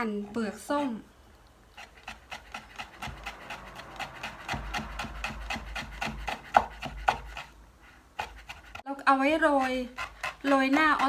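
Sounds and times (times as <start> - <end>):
knife chopping on cutting board: 1.8 - 7.6, 8.2 - 11.0.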